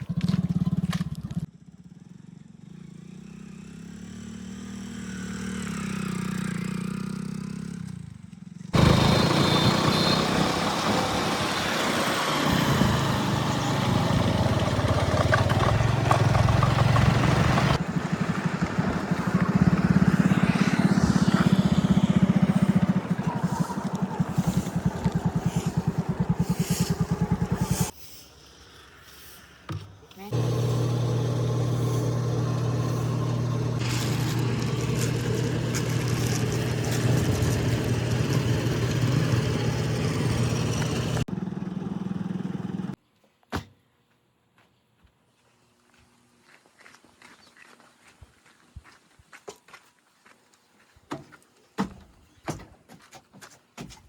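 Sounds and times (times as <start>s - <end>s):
vehicle engine running: 8.7s - 28.0s, 30.3s - 43.0s.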